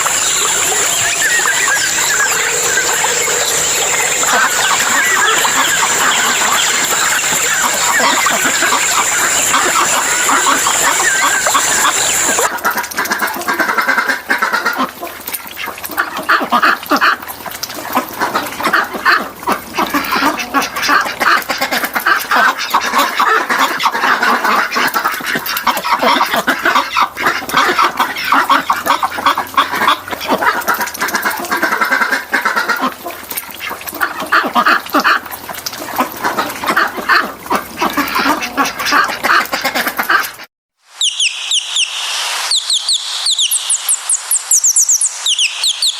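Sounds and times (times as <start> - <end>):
flock of birds calling: 0.0 - 12.8, 41.0 - 45.9.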